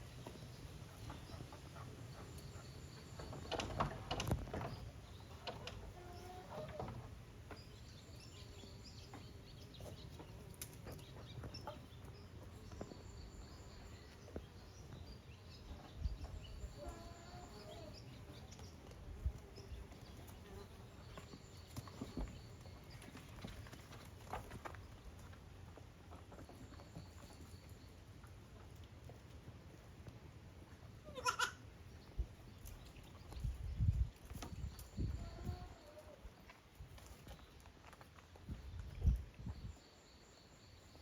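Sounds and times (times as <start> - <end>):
goats knocking and shuffling: 0.0 - 17.4, 18.1 - 31.4, 36.1 - 39.8
faint birds chirping: 0.0 - 29.1, 29.9 - 41.0
goats calling softly: 31.0 - 31.6.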